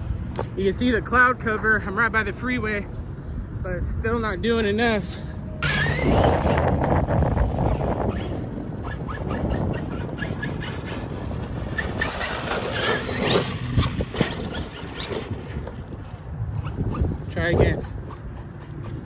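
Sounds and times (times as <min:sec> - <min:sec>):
electric motor whining: 0:04.9 - 0:19.0.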